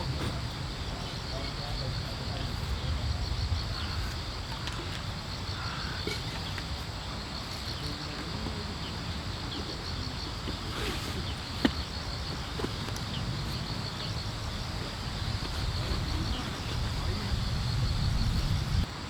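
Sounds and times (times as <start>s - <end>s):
insects chirping: 0.0s - 19.0s.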